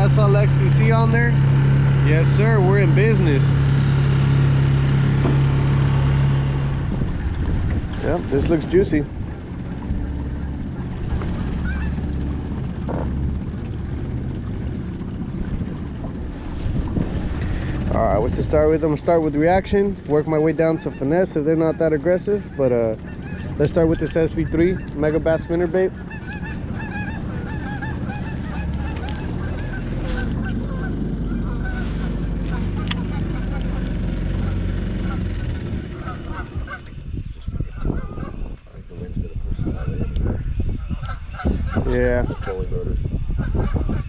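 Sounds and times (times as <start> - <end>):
boat motor running: 0.0 - 38.7
steady low rumble: 0.0 - 44.0
wind on microphone: 5.3 - 20.1, 34.8 - 44.0
geese honking: 9.2 - 12.6, 19.5 - 36.9.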